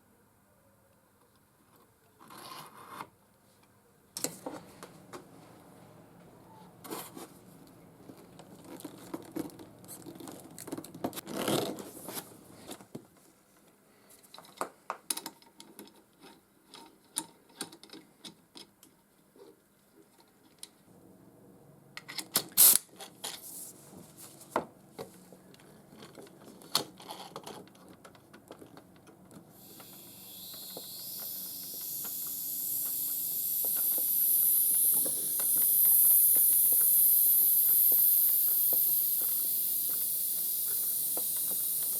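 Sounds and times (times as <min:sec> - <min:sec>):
high hiss: 0:22.5 - 0:22.9, 0:29.5 - 0:41.9.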